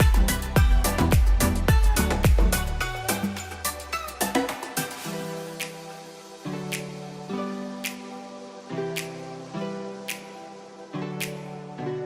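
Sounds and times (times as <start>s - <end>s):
dance music with kick drum: 0.0s - 6.0s.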